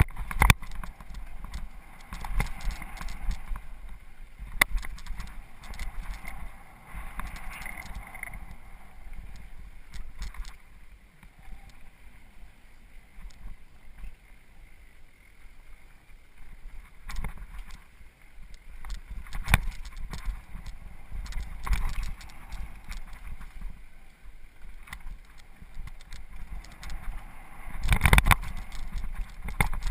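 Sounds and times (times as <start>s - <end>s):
wind rumble on microphone: 0.0s - 10.6s, 18.4s - 23.9s, 24.6s - 29.9s
bike clicks and rattles: 0.0s - 11.8s, 16.4s - 29.9s.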